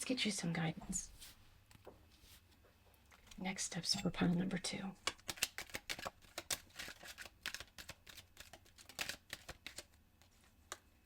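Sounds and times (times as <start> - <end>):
cards being shuffled: 5.1 - 10.8.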